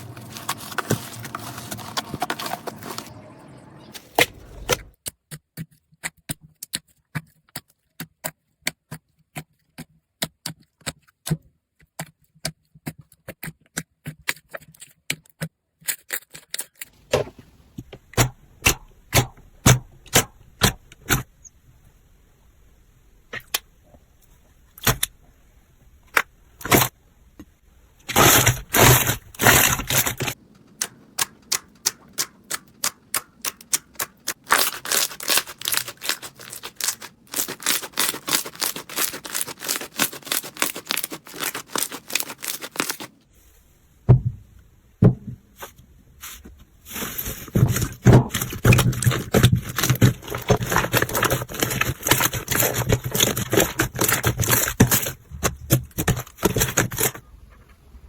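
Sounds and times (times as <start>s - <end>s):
slime squishing with crackles: 28.0s - 43.2s, 46.9s - 57.3s.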